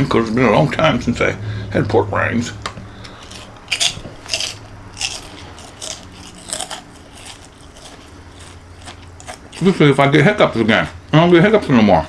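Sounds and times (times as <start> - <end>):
person chewing crunchy food: 2.7 - 12.0.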